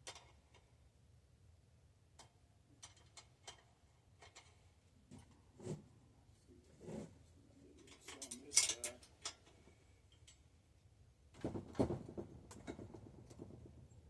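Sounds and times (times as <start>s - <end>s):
light rattle: 7.6s - 10.5s
bicycle parts clinking: 7.8s - 10.4s.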